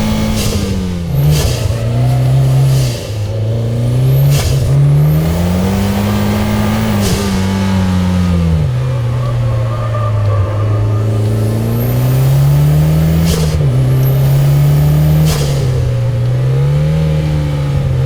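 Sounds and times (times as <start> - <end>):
car engine revving: 0.0 - 18.0
turbo whistling: 4.2 - 16.7.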